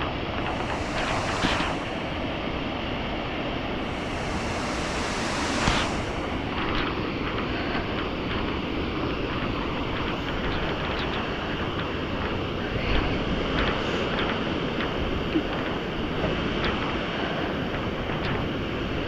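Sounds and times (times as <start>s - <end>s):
wind noise on microphone: 0.0s - 19.0s
waterfall rushing: 0.4s - 2.2s, 3.8s - 6.5s.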